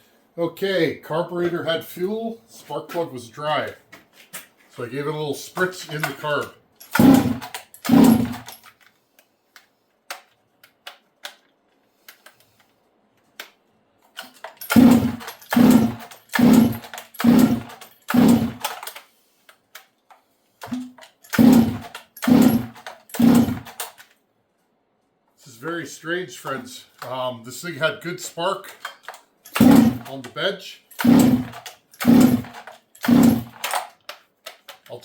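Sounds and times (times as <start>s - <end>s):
chainsaw recoil starter cranking: 5.7s - 8.8s, 14.2s - 19.0s, 20.6s - 24.1s, 28.7s - 35.0s.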